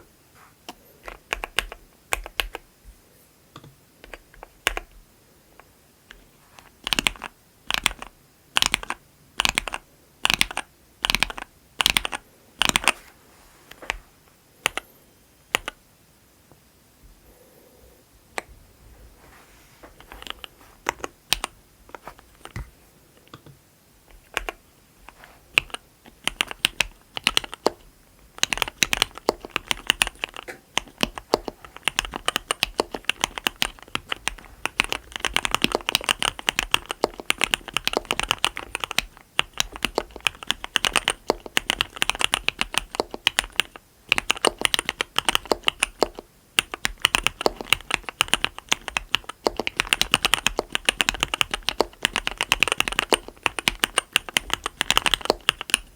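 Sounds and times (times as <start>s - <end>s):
typing on mechanical keyboard: 0.7s - 2.6s, 4.0s - 5.0s, 6.1s - 13.0s, 14.6s - 14.9s, 15.5s - 15.8s, 20.0s - 22.6s, 24.1s - 55.9s.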